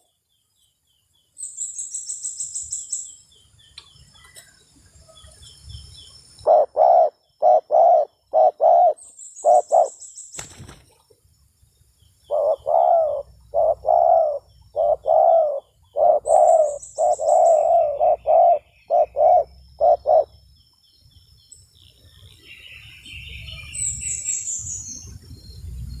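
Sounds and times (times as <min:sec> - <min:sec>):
small birds chirping: 0:00.0 - 0:26.0
dove cooing: 0:06.5 - 0:10.0, 0:12.3 - 0:20.4.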